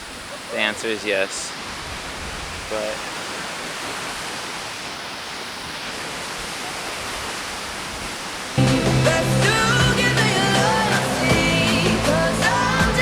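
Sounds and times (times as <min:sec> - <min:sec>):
waterfall rushing roar: 0:00.0 - 0:13.0
music: 0:08.6 - 0:13.0.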